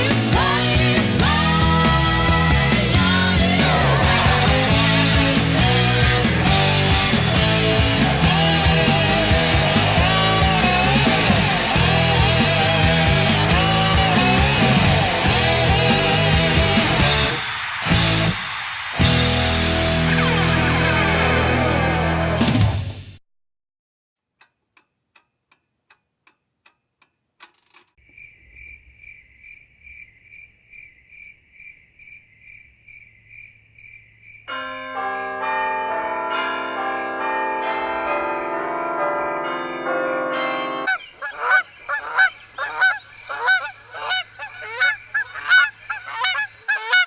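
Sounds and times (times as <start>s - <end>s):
faint ticking: 24.4s - 28.3s
loud sustained chord: 34.5s - 40.9s
goose-like honking: 40.9s - 47.0s.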